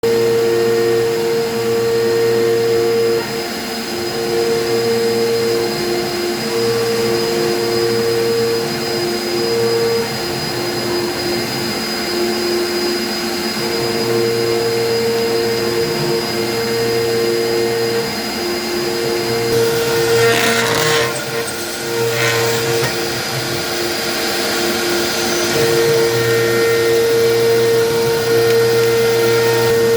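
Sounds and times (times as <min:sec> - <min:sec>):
router spindle whining: 0:00.1 - 0:29.9
lower machine tone: 0:12.2 - 0:29.9.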